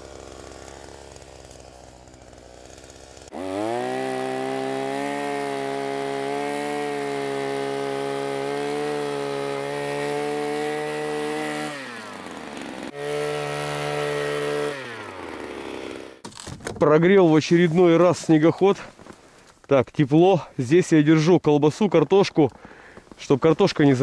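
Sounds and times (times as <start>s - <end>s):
small petrol engine revving: 0.0s - 16.2s.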